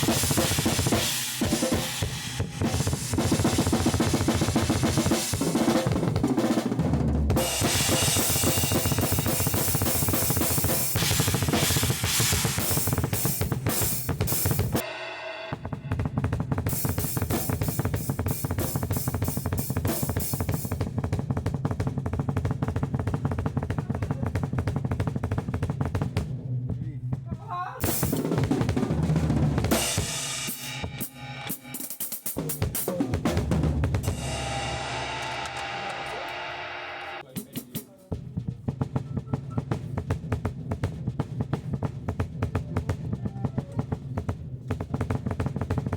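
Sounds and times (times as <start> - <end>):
bass drum: 0.0 - 14.9, 15.5 - 31.7, 32.4 - 45.9
cymbals ringing: 34.0 - 37.3
band holding a chord: 34.1 - 37.2
snare hits: 34.4 - 38.1.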